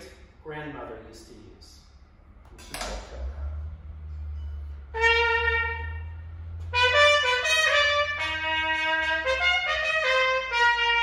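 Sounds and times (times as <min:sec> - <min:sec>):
trumpet playing: 0:04.9 - 0:11.0.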